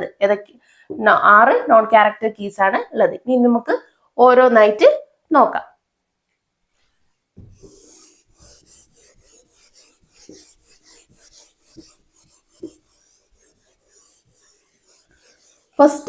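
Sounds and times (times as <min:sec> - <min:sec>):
scratchy writing strokes: 0:06.3 - 0:16.0.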